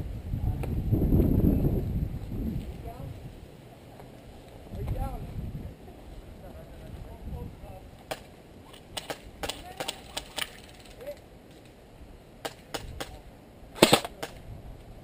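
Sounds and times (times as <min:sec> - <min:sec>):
airsoft gun shots: 0:13.8 - 0:14.4.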